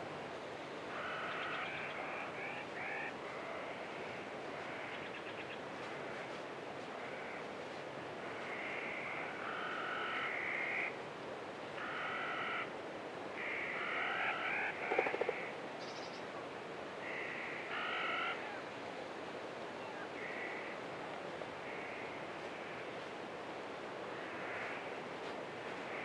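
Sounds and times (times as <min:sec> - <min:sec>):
steady wind-like hiss: 0:00.0 - 0:26.0.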